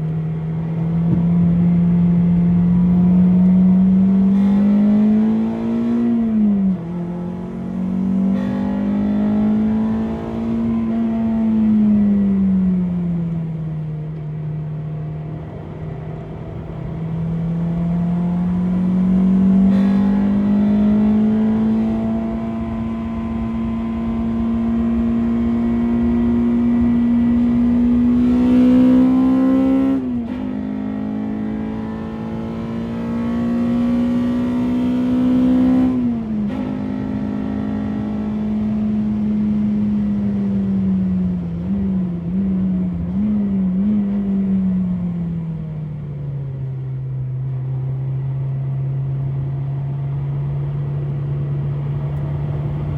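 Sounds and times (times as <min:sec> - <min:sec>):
car engine revving hard: 0:00.9 - 0:12.2, 0:16.6 - 0:40.4.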